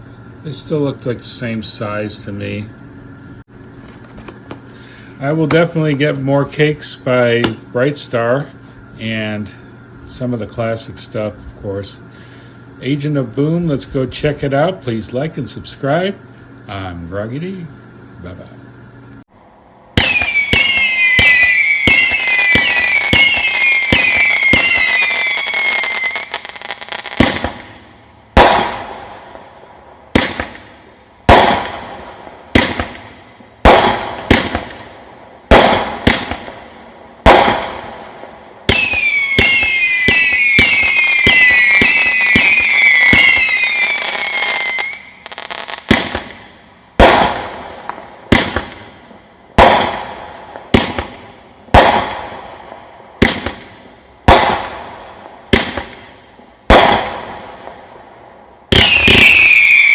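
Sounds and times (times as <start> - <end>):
sharp firework shots: 7.4 - 7.7, 20.0 - 58.0, 58.7 - 59.9
firework crackle: 20.0 - 34.9, 35.5 - 48.9, 58.7 - 59.9
whistling firework shots: 20.0 - 49.0, 49.6 - 57.9, 58.7 - 59.9.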